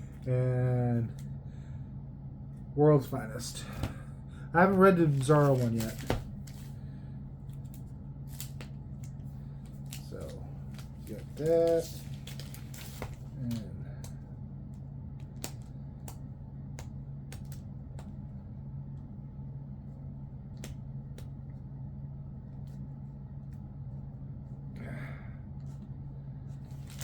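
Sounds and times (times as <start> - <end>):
steady low hum: 0.0 - 27.0
plastic rustling: 4.6 - 6.8, 9.6 - 13.6, 26.6 - 27.0.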